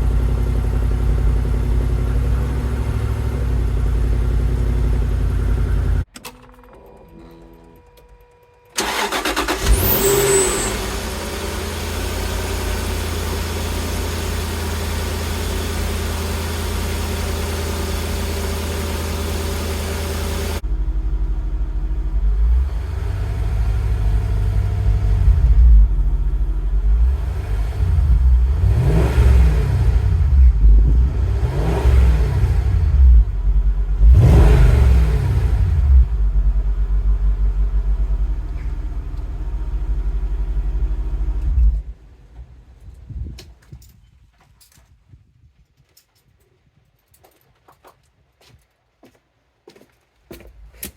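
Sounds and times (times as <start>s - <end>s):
car engine starting and revving: 0.0s - 6.1s, 8.8s - 42.0s.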